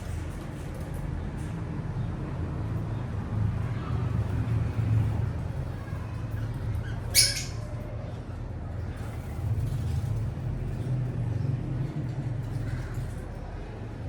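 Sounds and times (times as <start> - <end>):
parrot squawk: 7.2 - 7.6.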